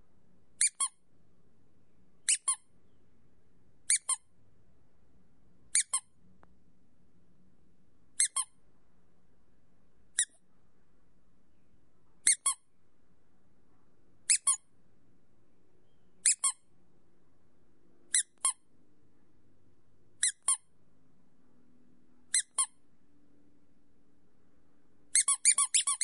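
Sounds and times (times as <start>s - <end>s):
rubber squeak toy squeaking: 0.6s - 1.0s, 2.3s - 2.6s, 3.9s - 4.2s, 5.7s - 6.1s, 8.2s - 8.5s, 10.2s - 10.4s, 12.2s - 12.6s, 14.3s - 14.6s, 16.2s - 16.6s, 18.1s - 18.6s, 20.2s - 20.7s, 22.3s - 22.8s, 25.1s - 26.0s.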